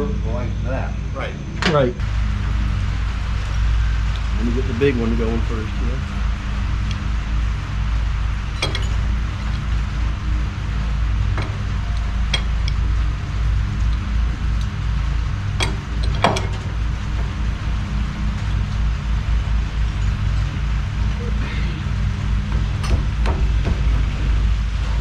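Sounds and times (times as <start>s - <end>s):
engine drone: 0.0s - 25.0s
wrenches clinking on steel: 8.5s - 14.8s, 15.5s - 18.5s.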